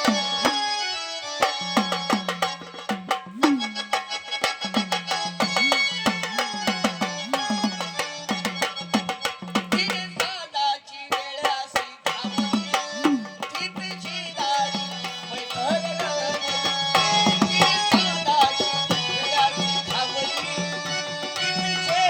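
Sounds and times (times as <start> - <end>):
hand drum fast rhythm: 0.0 - 0.8, 1.4 - 10.4, 11.1 - 22.0.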